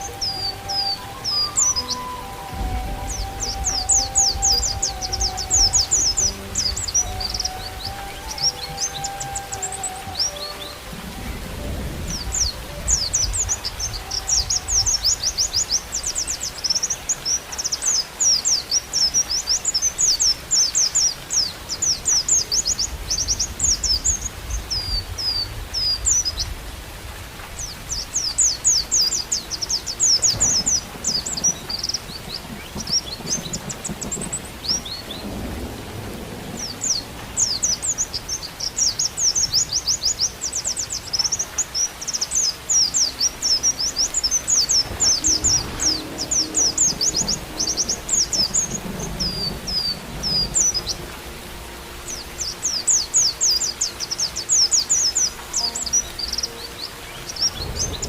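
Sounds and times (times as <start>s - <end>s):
low rumbles: 0.0s - 16.8s, 40.4s - 54.0s, 55.3s - 58.0s
bird chirps and trills: 0.0s - 58.0s
rain hiss: 0.0s - 58.0s.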